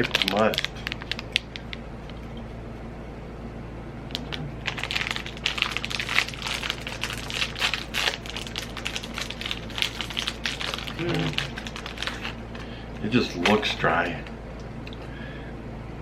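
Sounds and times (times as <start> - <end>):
plastic wrapper crinkling: 0.0 - 2.4, 4.1 - 14.3
low steady hum: 0.0 - 16.0.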